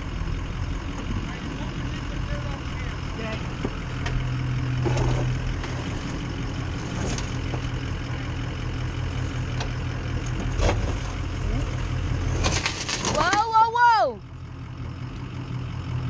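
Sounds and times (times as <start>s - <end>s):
diesel engine droning: 0.0s - 16.0s.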